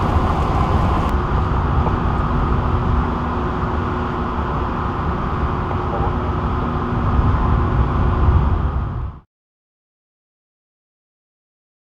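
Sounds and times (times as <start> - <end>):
vehicle engine humming: 0.0 - 9.0
city street rumble: 0.0 - 9.2.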